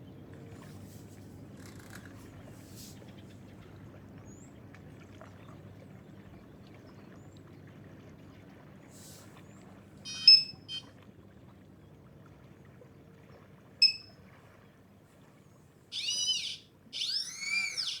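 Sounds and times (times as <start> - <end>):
short sharp beeps: 10.1 - 10.8, 13.8 - 14.1.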